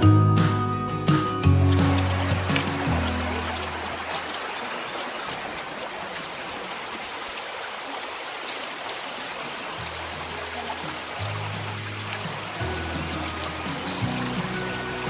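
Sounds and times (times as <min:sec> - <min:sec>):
low music notes: 0:00.0 - 0:04.4, 0:09.8 - 0:15.0
creek water running: 0:00.0 - 0:15.0.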